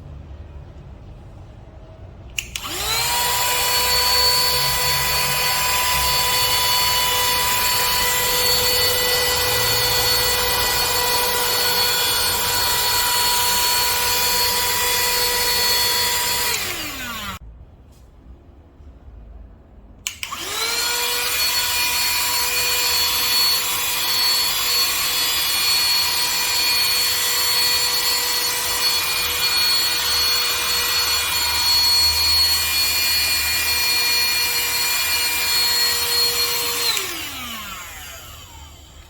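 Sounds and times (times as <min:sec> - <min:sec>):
vacuum cleaner switch click: 0:02.4 - 0:03.2, 0:20.0 - 0:20.6
handheld vacuum cleaner whining: 0:02.4 - 0:17.4, 0:20.0 - 0:39.0.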